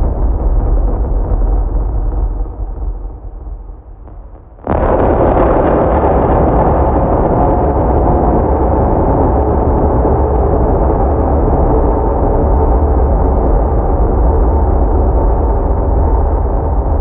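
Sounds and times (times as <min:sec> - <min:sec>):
loud wash of dense noise: 0:00.0 - 0:17.0
low rumble: 0:00.0 - 0:17.0.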